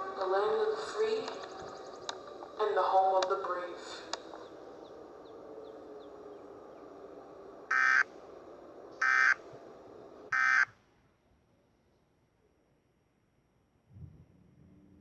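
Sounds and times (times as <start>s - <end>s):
low hiss: 0.0s - 15.0s
buzzy digital data tones: 7.7s - 8.1s, 9.0s - 9.4s.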